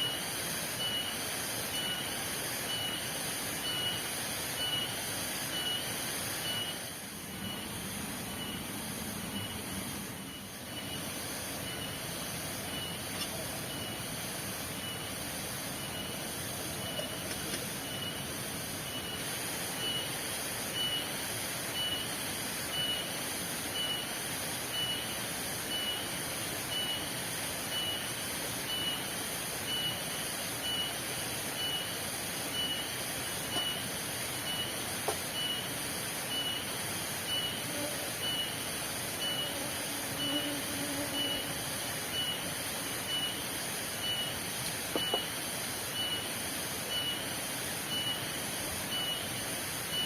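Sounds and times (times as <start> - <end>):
high insect drone: 0.0 - 50.0
steady rain hiss: 0.0 - 50.0
short high-pitched beeps: 4.6 - 7.7, 15.8 - 17.2, 31.6 - 35.7, 37.3 - 40.5, 41.1 - 44.4, 45.0 - 46.3, 46.9 - 47.3, 47.9 - 48.3, 48.9 - 50.0.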